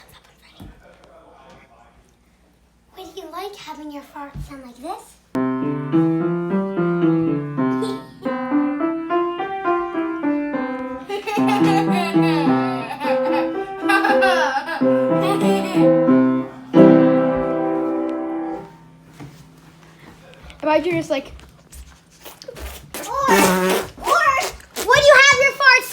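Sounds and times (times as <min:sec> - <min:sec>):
piano music: 0:05.4 - 0:20.1.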